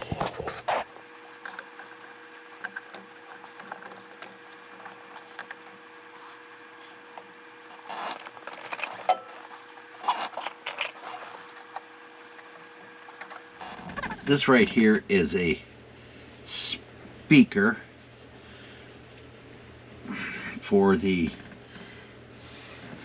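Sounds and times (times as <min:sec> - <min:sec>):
faint steady hum: 0:00.0 - 0:23.0
parts and tools clicking and rattling: 0:00.3 - 0:14.3.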